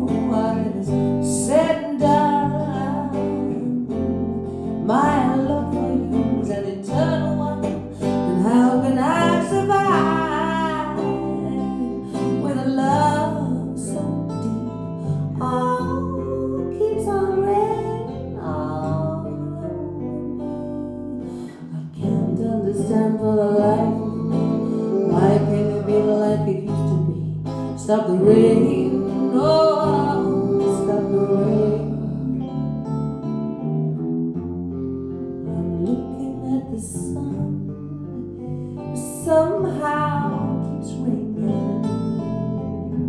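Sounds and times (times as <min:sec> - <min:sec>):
acoustic guitar: 0:00.0 - 0:43.0
bass line: 0:00.0 - 0:43.0
bending melody line: 0:22.0 - 0:33.8.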